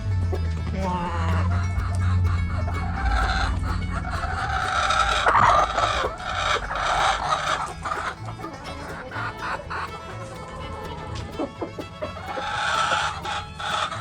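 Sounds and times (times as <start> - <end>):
hens clucking: 0.0 - 14.0
rooster crowing: 0.4 - 14.0.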